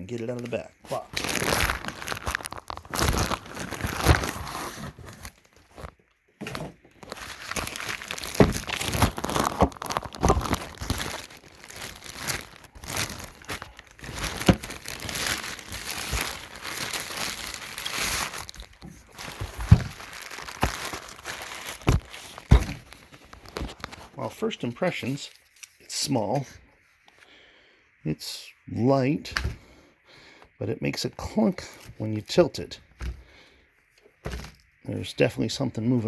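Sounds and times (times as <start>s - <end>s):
cardboard and plastic crinkling: 0.0s - 25.8s.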